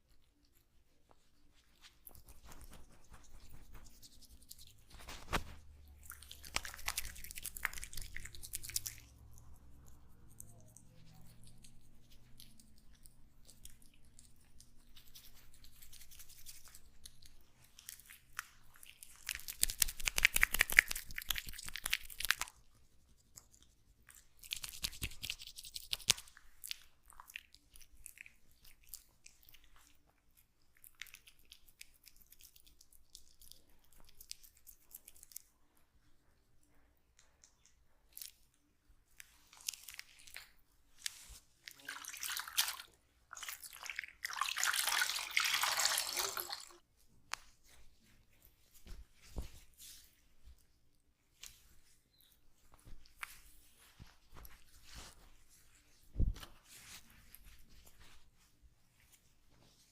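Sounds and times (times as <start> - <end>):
close crackling rubbing: 0.8 - 9.5.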